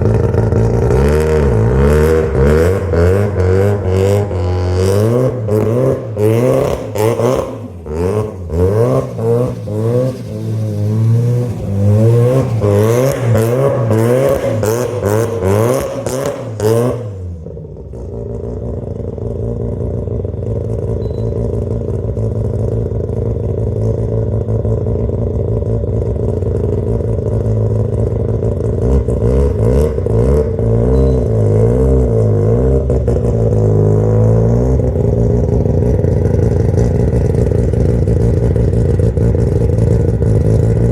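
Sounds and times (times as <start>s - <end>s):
rotary engine revving: 0.0s - 17.3s.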